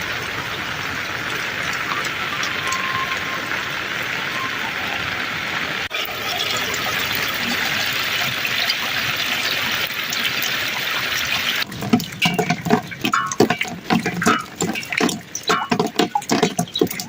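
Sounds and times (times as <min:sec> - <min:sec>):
falling water rushing: 0:00.0 - 0:17.0
water splashes and knocks: 0:11.4 - 0:17.0.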